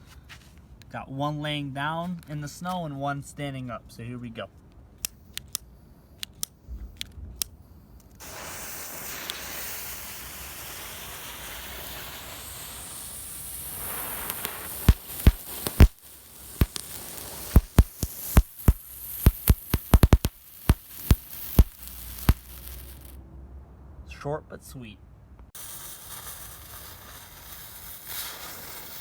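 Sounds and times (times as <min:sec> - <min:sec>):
firework cracks: 0:08.2 - 0:23.2, 0:25.6 - 0:29.0
fountain fireworks hissing: 0:08.2 - 0:23.2, 0:25.6 - 0:29.0.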